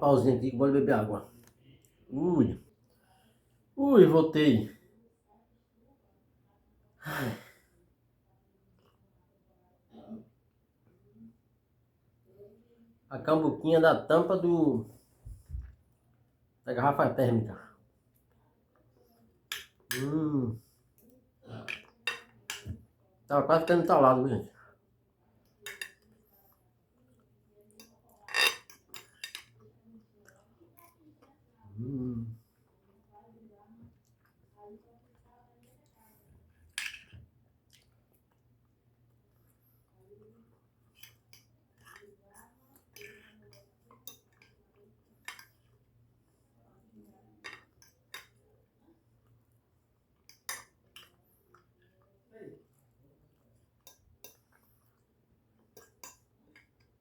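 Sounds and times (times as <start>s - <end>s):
cutlery clinking on a plate: 21.6s - 22.8s, 25.6s - 26.1s, 27.8s - 29.6s, 36.7s - 37.2s, 42.8s - 44.6s, 53.8s - 54.6s, 55.7s - 56.9s.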